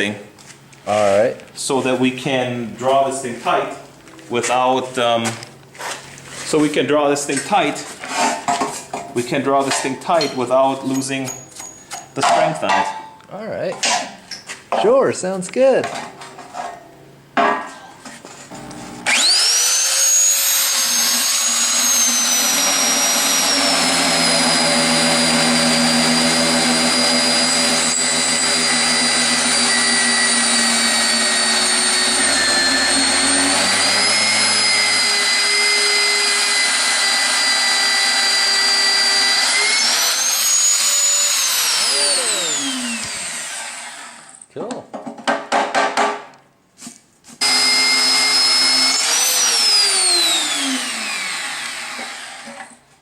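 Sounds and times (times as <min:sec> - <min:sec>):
electric saw cutting steel tubing: 0:18.6 - 0:44.4, 0:47.4 - 0:52.8.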